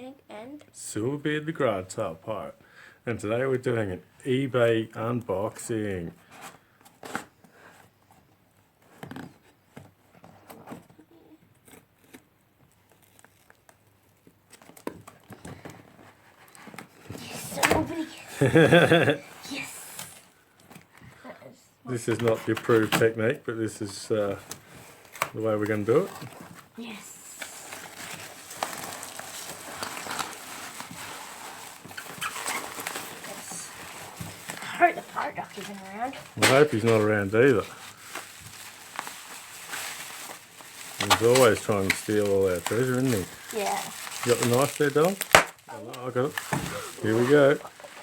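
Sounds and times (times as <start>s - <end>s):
parcel packaging taps and rustles: 24.4s - 48.0s.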